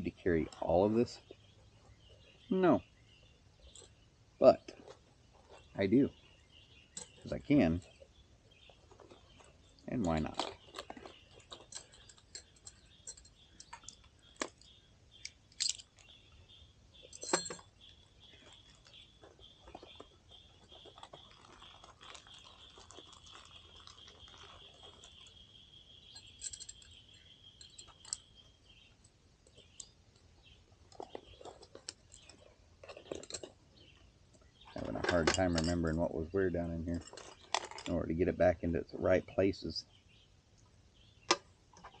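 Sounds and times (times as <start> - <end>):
plastic bags crinkling: 18.4 - 25.2.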